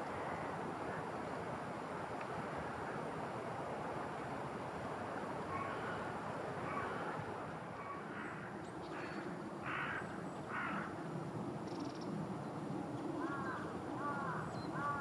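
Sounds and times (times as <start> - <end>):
crow cawing: 5.5 - 6.0, 9.6 - 10.9, 13.2 - 15.0.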